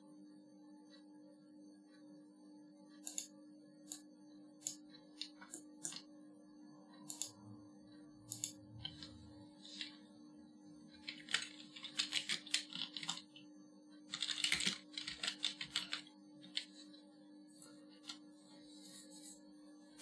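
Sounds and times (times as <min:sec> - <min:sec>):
low electrical hum: 0:00.0 - 0:20.0
typing on a computer keyboard: 0:03.0 - 0:03.3, 0:07.0 - 0:07.4, 0:08.3 - 0:10.0, 0:11.0 - 0:13.4, 0:14.1 - 0:16.9.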